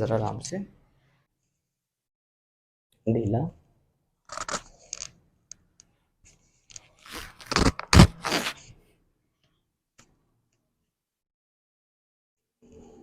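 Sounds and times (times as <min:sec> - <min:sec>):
spinal joints popping: 0:07.1 - 0:08.5.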